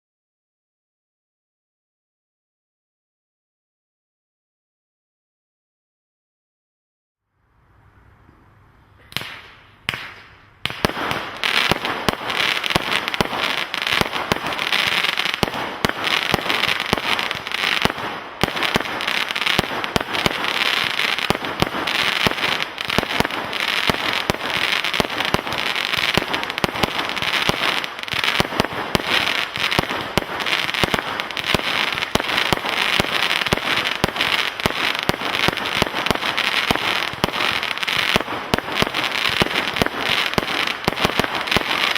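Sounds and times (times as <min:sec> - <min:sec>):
firework crackle: 0:09.1 - 0:41.9
firework cake rapid bangs: 0:09.2 - 0:41.9.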